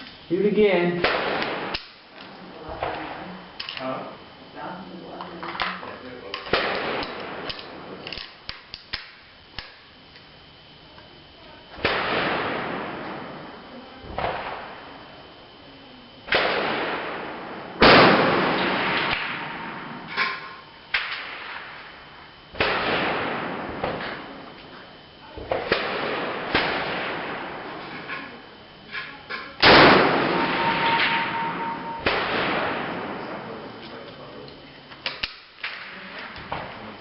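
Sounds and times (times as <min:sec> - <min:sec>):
rifle shots echoing: 0:01.0 - 0:02.0, 0:06.4 - 0:08.1, 0:11.8 - 0:13.4, 0:16.3 - 0:21.9, 0:22.6 - 0:24.3, 0:25.5 - 0:27.9, 0:29.6 - 0:33.6.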